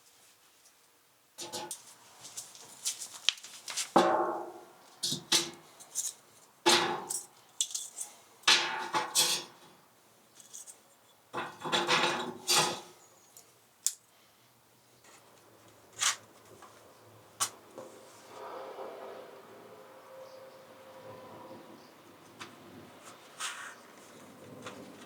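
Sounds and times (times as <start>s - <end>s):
dishes and cutlery clattering: 11.4s - 12.9s.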